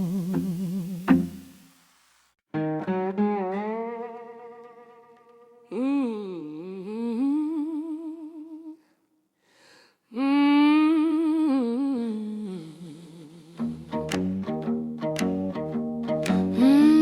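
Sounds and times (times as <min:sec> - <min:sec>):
woman humming: 0:00.0 - 0:01.2, 0:05.6 - 0:08.8, 0:16.3 - 0:17.0.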